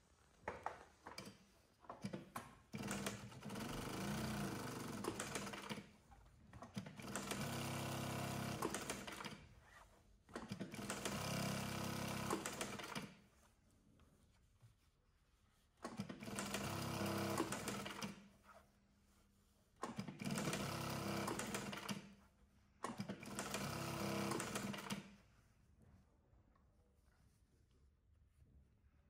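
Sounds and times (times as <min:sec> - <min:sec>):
sewing machine stitching: 0:01.9 - 0:05.9, 0:06.6 - 0:09.5, 0:10.3 - 0:13.2, 0:15.8 - 0:18.3, 0:19.8 - 0:22.1, 0:22.8 - 0:25.2.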